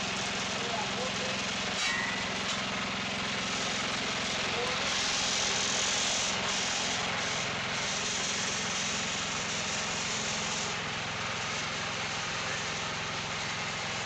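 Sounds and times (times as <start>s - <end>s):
sawmill engine droning: 0.0s - 14.0s
high hiss of saw: 4.6s - 10.8s.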